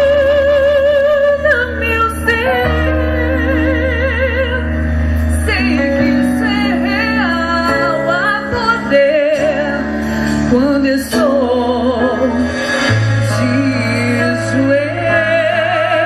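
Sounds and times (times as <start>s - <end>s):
woman singing gospel: 5.3s - 12.6s, 13.2s - 16.0s.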